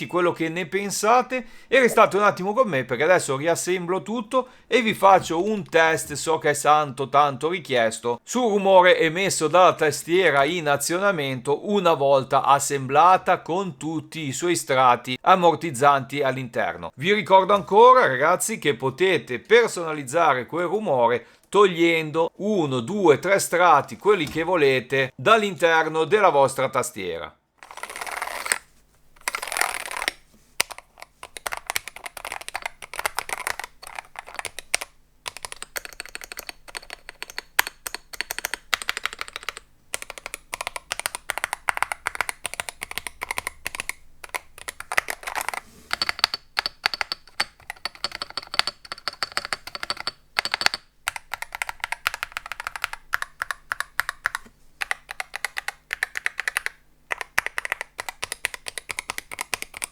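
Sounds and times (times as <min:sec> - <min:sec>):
faint high steady tone: 0:00.0 - 0:02.8
keyboard key clacks: 0:29.3 - 0:59.9.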